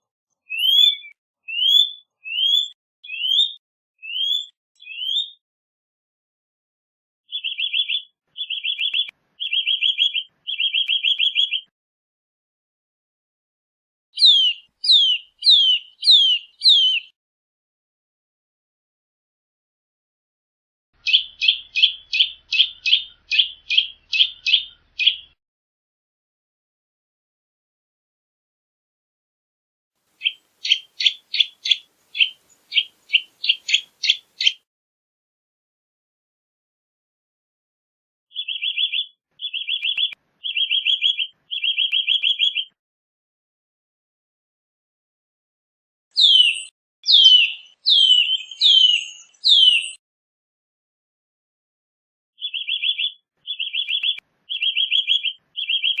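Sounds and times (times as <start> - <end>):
bird trilling: 0.5 - 5.4, 7.3 - 11.7, 14.2 - 17.1, 21.0 - 25.4, 30.2 - 34.6, 38.3 - 42.7, 46.2 - 50.0, 52.4 - 56.0
bird whistles sliding downward: 14.2 - 17.1, 46.2 - 50.0.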